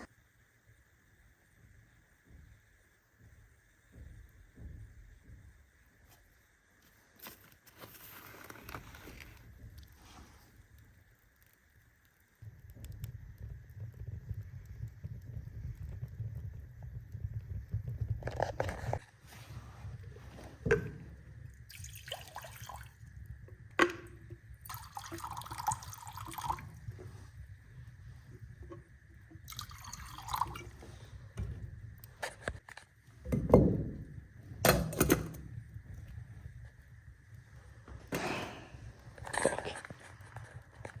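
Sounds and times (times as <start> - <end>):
water pouring into a pot: 19.0 - 31.4.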